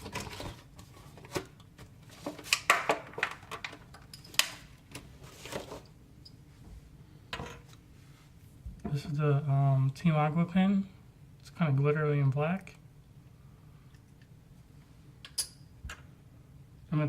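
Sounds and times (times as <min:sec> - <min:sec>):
cardboard and plastic packaging rustling: 0:00.0 - 0:05.9.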